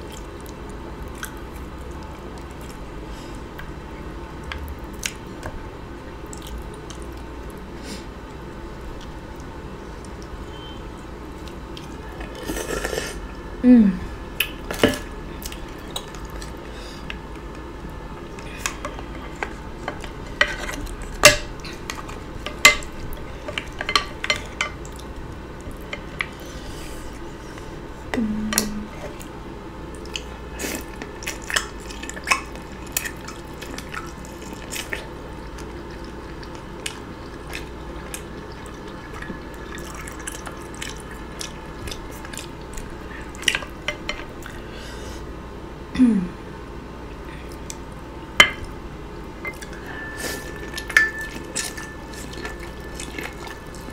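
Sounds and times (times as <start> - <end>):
wet chewing and smacking: 0.0 - 10.4, 11.0 - 12.4, 14.4 - 27.4, 29.9 - 44.7, 50.5 - 53.9
low vocal sounds: 13.6 - 14.2, 28.1 - 29.0, 45.9 - 46.5.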